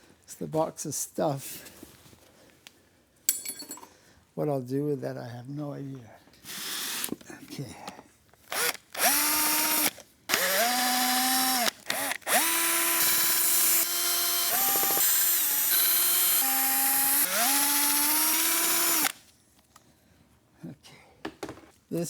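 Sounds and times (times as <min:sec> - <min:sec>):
cordless drill whining: 0:06.4 - 0:07.2, 0:08.4 - 0:19.2.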